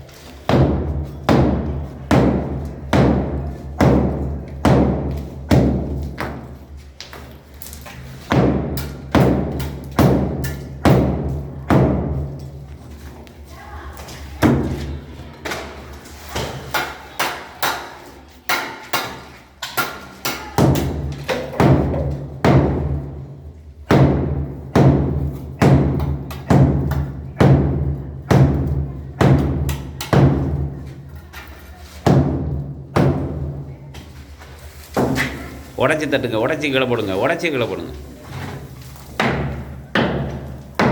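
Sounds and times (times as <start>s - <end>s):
hammer blows breaking masonry: 0.5s - 6.4s, 8.3s - 12.3s, 23.9s - 30.7s, 39.2s - 40.9s.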